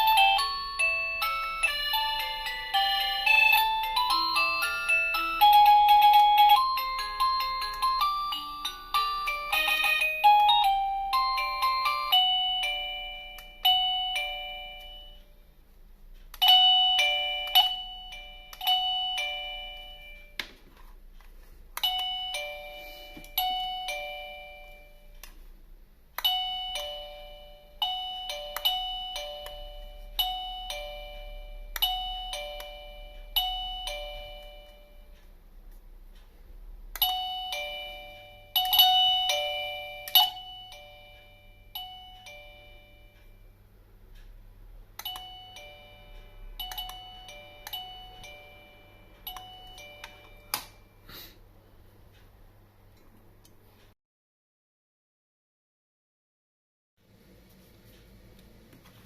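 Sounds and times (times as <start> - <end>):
electronic doorbell chime: 0.0 - 15.4, 16.4 - 20.4, 21.8 - 25.2, 26.2 - 35.3, 37.0 - 43.6, 45.0 - 51.0.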